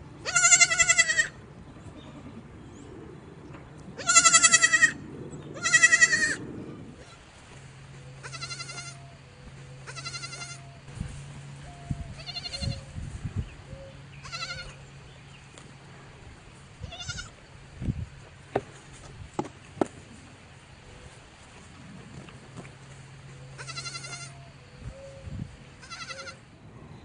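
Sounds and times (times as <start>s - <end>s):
goats bleating: 0.2s - 2.3s, 4.0s - 5.0s, 5.6s - 6.4s, 8.2s - 9.0s, 9.8s - 10.7s, 14.2s - 14.8s, 16.8s - 17.4s, 23.6s - 24.4s, 25.8s - 26.4s.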